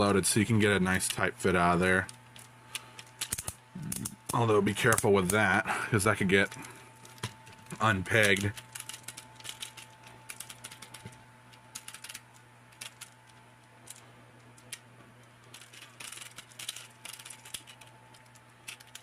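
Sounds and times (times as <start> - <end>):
faint electrical hum: 0.0 - 19.0
plastic parts clicking: 2.0 - 5.4, 6.4 - 14.8, 15.5 - 19.0.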